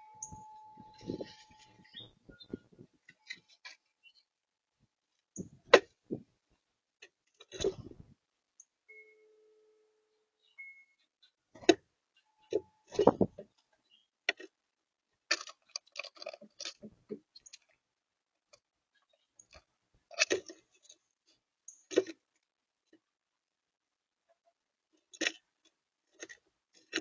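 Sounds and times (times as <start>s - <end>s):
birds pecking at feeder: 0.0s - 4.2s, 15.3s - 17.8s, 18.4s - 21.0s, 21.7s - 22.4s, 25.0s - 27.0s.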